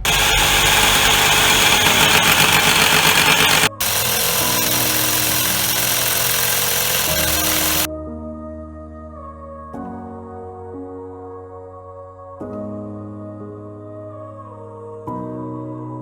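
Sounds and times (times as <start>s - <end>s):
power tool running: 0.0s - 7.9s.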